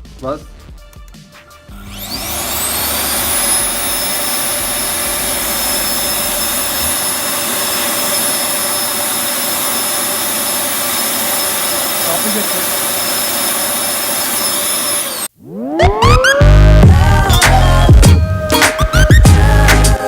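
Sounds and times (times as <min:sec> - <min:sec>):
vacuum cleaner motor running: 0:01.7 - 0:15.7.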